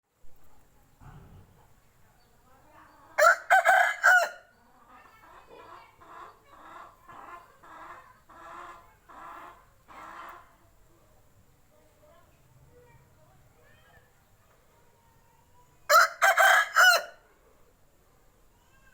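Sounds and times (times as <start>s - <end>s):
rooster crowing: 3.2s - 4.4s, 15.9s - 17.2s
chicken clucks: 4.8s - 10.8s.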